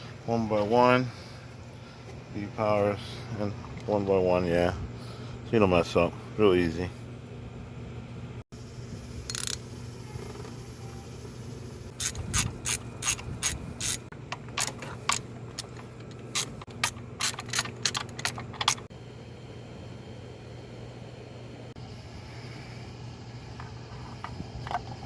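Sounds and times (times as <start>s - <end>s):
steady low hum: 0.0s - 25.0s
socket ratchet clicking: 9.3s - 9.6s, 12.0s - 18.9s.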